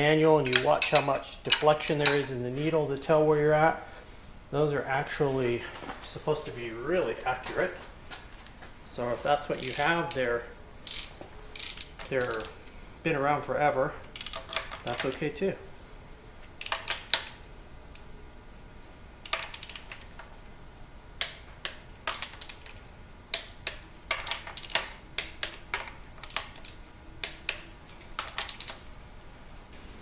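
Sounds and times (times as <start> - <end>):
torque wrench clicking: 9.6 - 10.2, 10.8 - 12.6, 14.1 - 15.2, 16.6 - 18.1, 19.2 - 20.0, 21.2 - 28.8.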